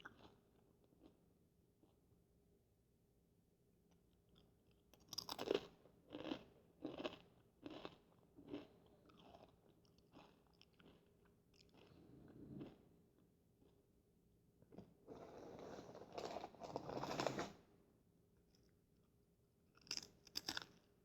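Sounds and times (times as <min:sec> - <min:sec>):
corn chips crunching: 0:19.8 - 0:20.8.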